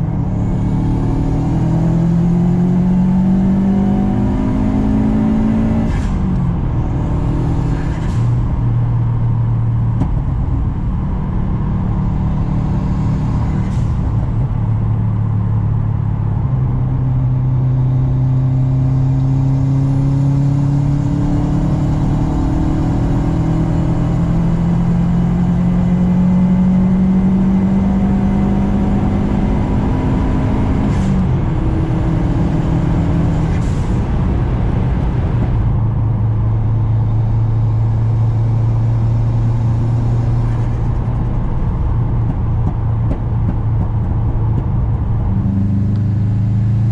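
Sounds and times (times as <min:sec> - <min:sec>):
turbocharged car engine accelerating: 0:00.0 - 0:46.9.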